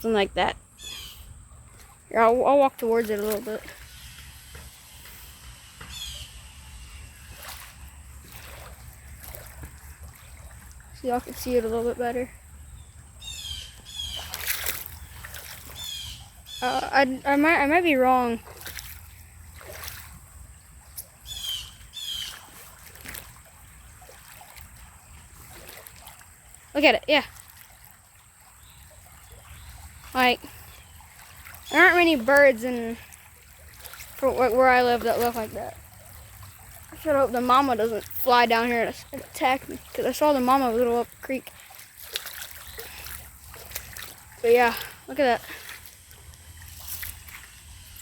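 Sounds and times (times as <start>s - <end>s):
creek water running: 0.0s - 48.0s
footsteps sloshing through water: 0.1s - 48.0s
high-pitched bird calls: 0.8s - 1.3s, 5.9s - 7.1s, 12.7s - 17.0s, 21.2s - 22.5s.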